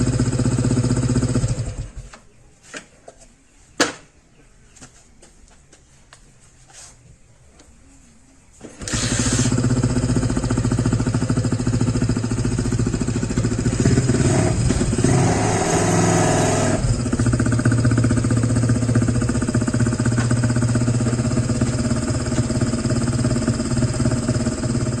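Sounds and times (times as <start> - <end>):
motorcycle engine idling: 0.0 - 2.2, 8.7 - 15.6, 16.5 - 25.0.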